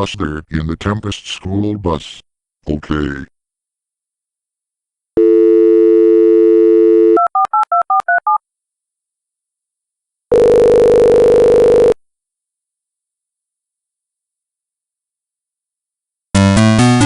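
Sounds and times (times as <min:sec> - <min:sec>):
buzzy telephone ringing tone: 0:05.2 - 0:07.4, 0:10.3 - 0:12.0
telephone dial tone: 0:05.2 - 0:08.4, 0:10.3 - 0:12.0.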